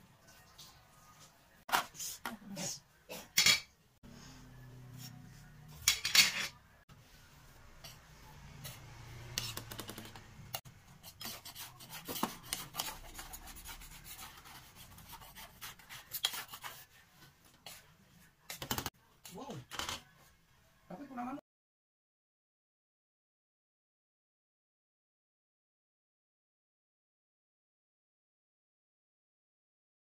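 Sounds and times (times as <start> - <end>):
kitchen utensils clinking: 3.2 - 3.7, 5.8 - 6.6
utensils scraping and rubbing: 4.9 - 6.6, 7.7 - 17.9.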